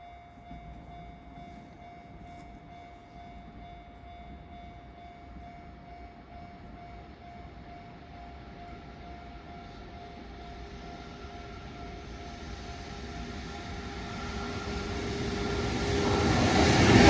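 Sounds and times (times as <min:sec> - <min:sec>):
low rumble: 0:12.0 - 0:17.0.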